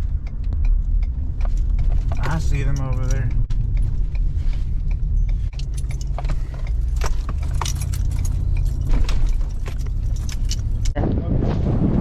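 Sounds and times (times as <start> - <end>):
truck engine and tyre rumble: 0.0 - 12.0
rattles and jingling clicks: 0.7 - 11.0.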